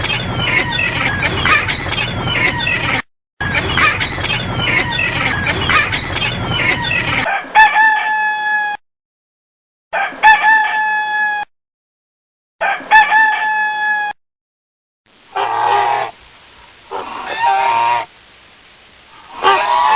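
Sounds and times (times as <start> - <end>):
busy animal sound: 0.0 - 8.8, 15.3 - 16.2, 16.9 - 18.1, 19.1 - 19.9
rooster crowing: 12.6 - 14.1, 16.9 - 18.1, 19.3 - 19.9.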